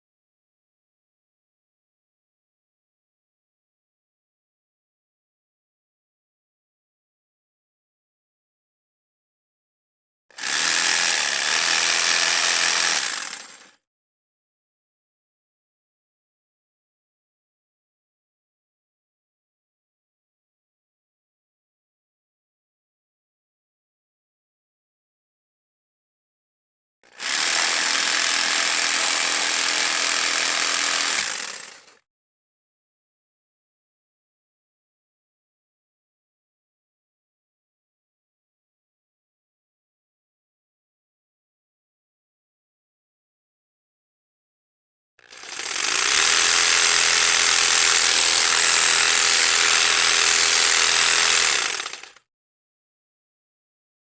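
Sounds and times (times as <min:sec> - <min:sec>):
electric jigsaw running: 0:10.3 - 0:13.8, 0:27.1 - 0:32.0, 0:45.2 - 0:52.3.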